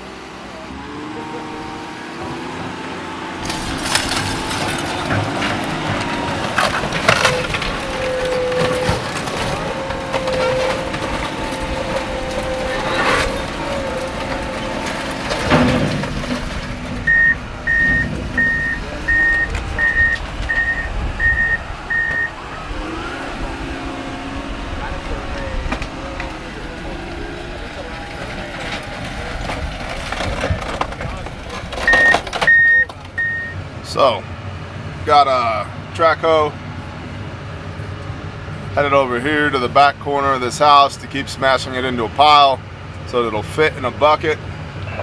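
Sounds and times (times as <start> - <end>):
heavy equipment running: 0.0 - 45.0
loud cracking crashes: 3.4 - 33.1
backup alarm beeping: 17.0 - 23.2, 31.9 - 33.6.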